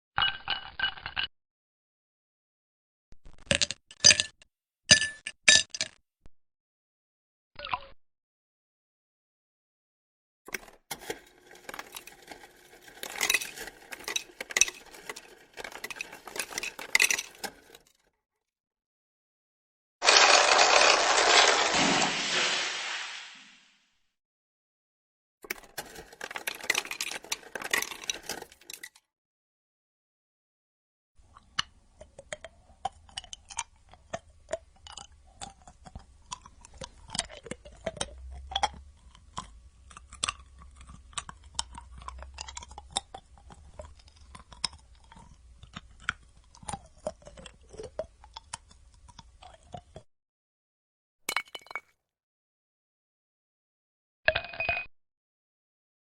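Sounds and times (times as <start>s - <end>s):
ice cubes clinking in a glass: 10.6s - 17.9s, 20.0s - 22.6s, 25.5s - 29.0s.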